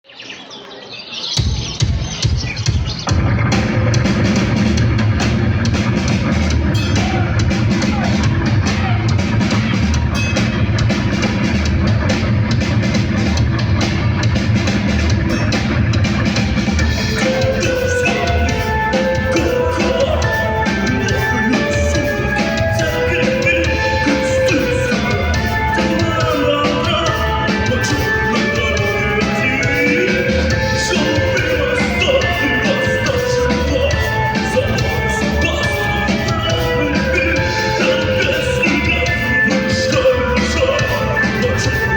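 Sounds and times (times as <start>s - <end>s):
live rock band: 1.3s - 41.9s
higher melody line: 16.7s - 41.9s.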